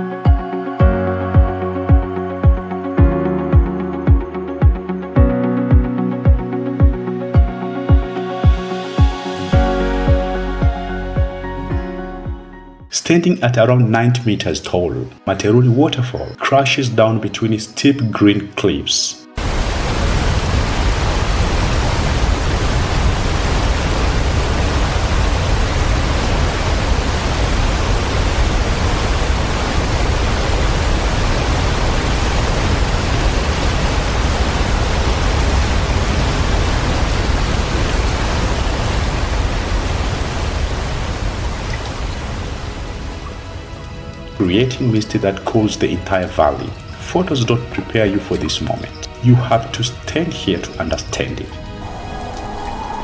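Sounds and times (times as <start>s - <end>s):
waterfall crashing: 19.4s - 44.4s, 51.8s - 53.0s.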